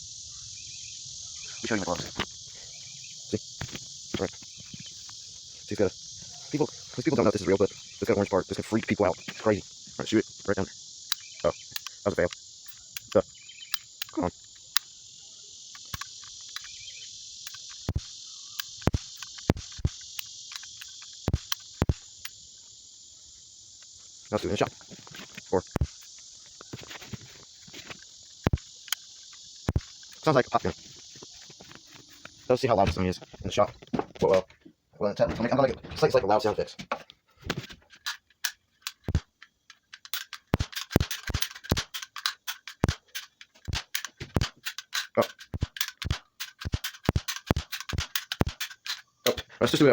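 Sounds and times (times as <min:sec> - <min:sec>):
steady high-pitched chirring: 0:00.0 - 0:49.9
cap gun popping: 0:15.8 - 0:16.8, 0:17.4 - 0:22.0, 0:40.0 - 0:49.5
cap gun firing: 0:40.6 - 0:43.0, 0:45.6 - 0:48.7.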